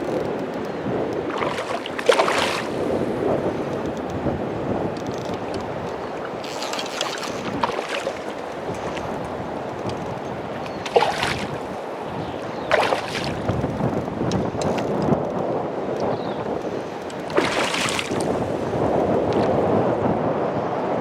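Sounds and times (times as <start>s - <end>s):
river water flowing over stones: 1.1s - 13.8s, 17.0s - 18.9s.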